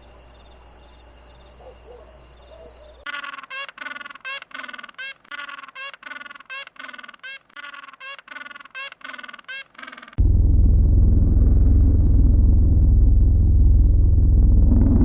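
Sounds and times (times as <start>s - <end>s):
loud low rumble: 10.2s - 15.0s.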